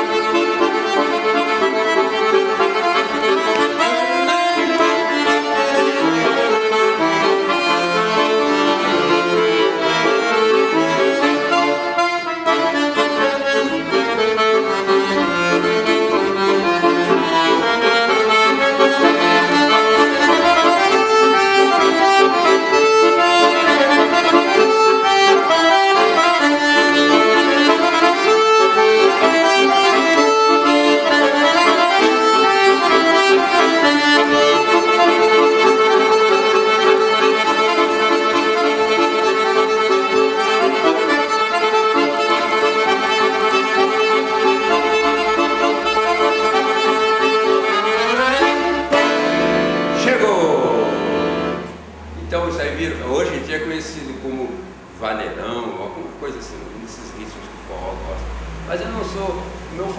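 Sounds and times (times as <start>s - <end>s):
accordion playing: 0.0s - 59.9s.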